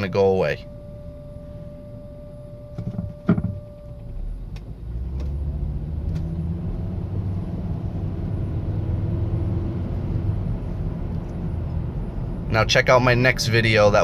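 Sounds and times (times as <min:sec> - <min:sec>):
turbo whine: 0:00.0 - 0:05.4
car engine rumble: 0:00.0 - 0:14.0
sharp thump: 0:02.8 - 0:03.7.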